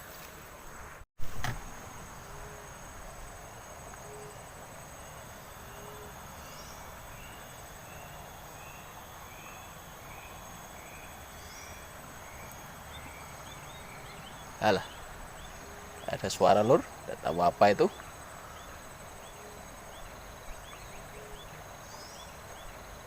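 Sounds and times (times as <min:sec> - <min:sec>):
insects droning: 0:00.0 - 0:23.0.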